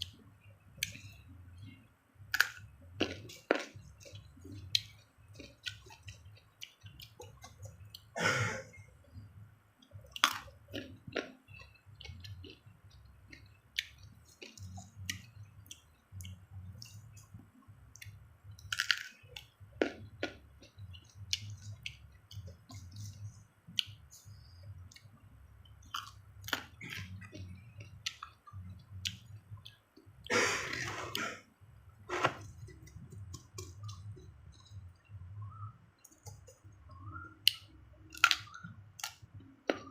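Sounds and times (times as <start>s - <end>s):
wet mouth clicks: 0.8s - 1.2s, 32.2s - 39.9s.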